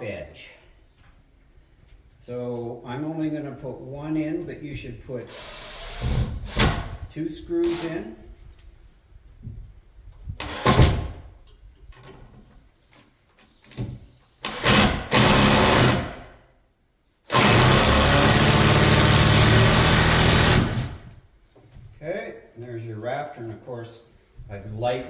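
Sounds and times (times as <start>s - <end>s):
power drill driving a screw: 5.3s - 6.9s, 7.6s - 8.0s, 10.4s - 11.0s, 14.4s - 16.2s, 17.3s - 21.0s.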